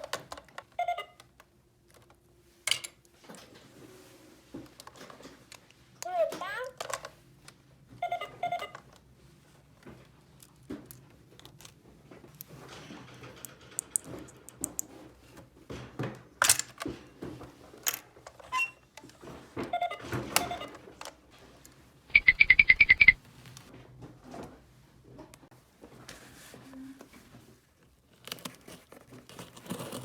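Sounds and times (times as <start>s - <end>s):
loud electronic toy beeps: 0.8s - 1.2s, 8.0s - 8.8s, 22.1s - 23.2s.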